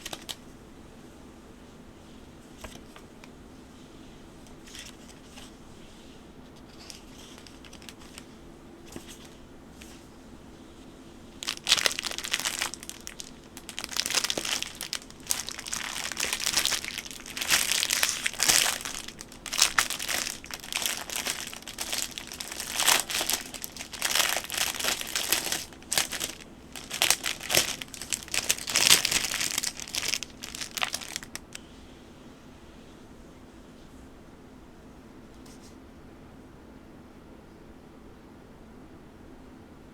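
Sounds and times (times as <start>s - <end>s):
packaging wrap crinkling: 0.0s - 0.4s, 6.6s - 8.3s, 11.4s - 31.6s.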